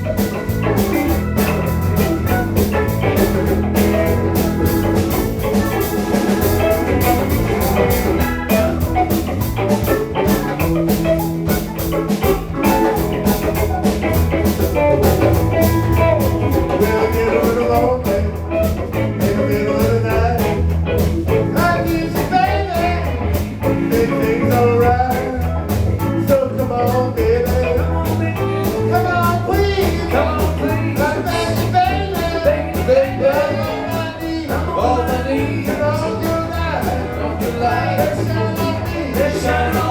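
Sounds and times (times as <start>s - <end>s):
live blues rock band: 0.0s - 39.9s
wavering lead guitar line: 0.0s - 39.9s.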